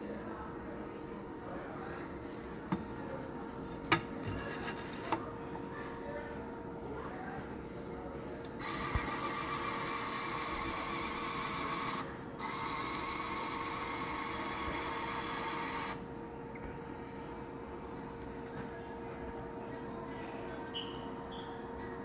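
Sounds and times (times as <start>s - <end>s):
faint constant hum: 0.0s - 22.0s
small machine high-pitched whine: 8.5s - 17.1s, 20.4s - 22.0s.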